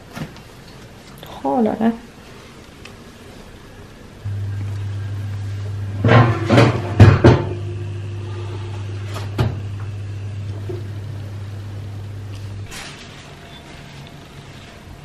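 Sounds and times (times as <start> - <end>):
kitchen appliance hum: 3.0 - 15.0.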